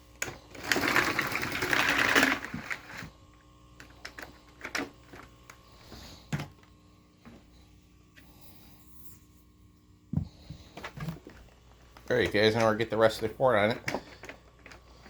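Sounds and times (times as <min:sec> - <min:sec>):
vacuum cord reel rattling whir: 0:00.0 - 0:03.2, 0:03.8 - 0:06.7.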